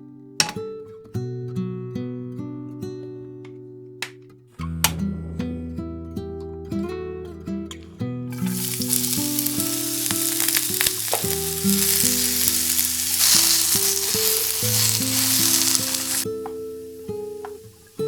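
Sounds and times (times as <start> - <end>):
food sizzling in frying pan: 8.4 - 18.0
utensil knocking in pan: 17.0 - 17.9.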